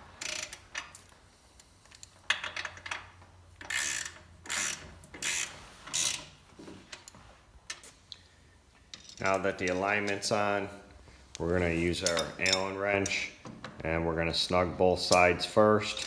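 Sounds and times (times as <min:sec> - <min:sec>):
ratchet wrench clicking: 0:03.6 - 0:06.3.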